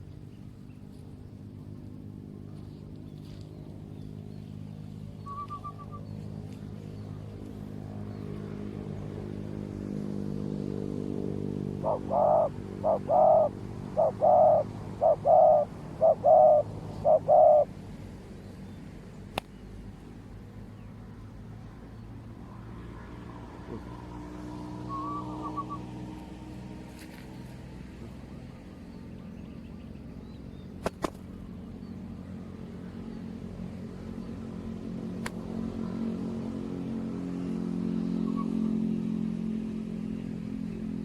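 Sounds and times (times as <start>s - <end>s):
steady low hum: 0.0s - 41.0s
dove cooing: 5.3s - 6.1s, 11.7s - 17.7s, 24.9s - 25.9s.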